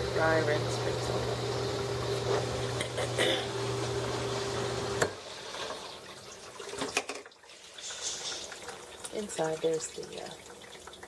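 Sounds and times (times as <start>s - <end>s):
dishwasher humming: 0.0s - 11.0s
water sounds: 0.1s - 11.0s.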